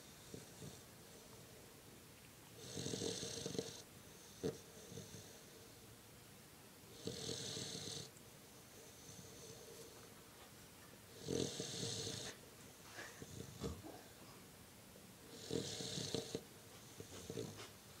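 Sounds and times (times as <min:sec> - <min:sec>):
faint snuffles: 0:11.2 - 0:14.5, 0:15.3 - 0:17.9
person snoring: 0:15.3 - 0:16.4.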